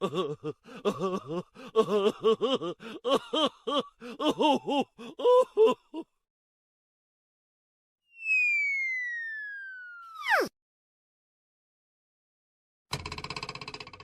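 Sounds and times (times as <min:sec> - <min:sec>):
comic vocal babbling: 0:10.2 - 0:10.5.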